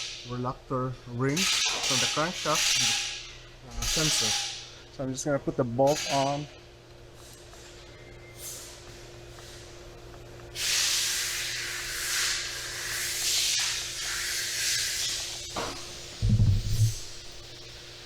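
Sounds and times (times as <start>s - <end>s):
loud hiss of air rushing out: 10.6s - 13.6s
faint steady hum: 13.6s - 18.0s.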